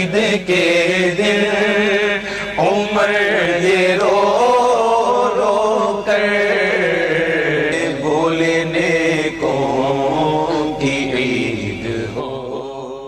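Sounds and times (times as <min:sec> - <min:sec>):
man chanting: 0:00.0 - 0:13.0.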